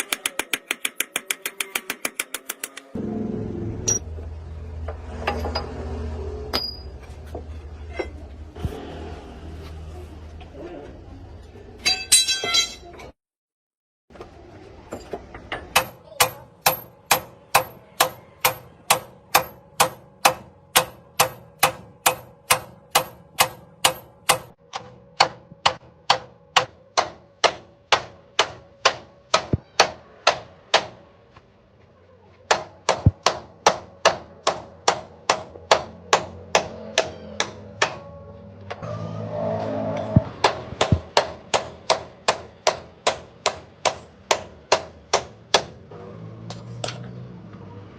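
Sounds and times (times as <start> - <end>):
hammer striking metal: 0.0 - 3.0, 6.5 - 7.0, 11.8 - 12.9, 15.4 - 31.0.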